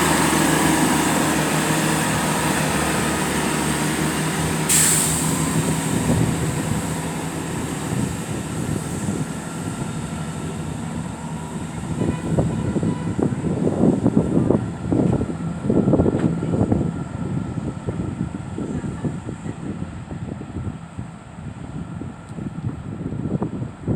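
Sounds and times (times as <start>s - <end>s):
diesel train engine hum: 0.0s - 23.9s
air hiss: 3.4s - 10.4s.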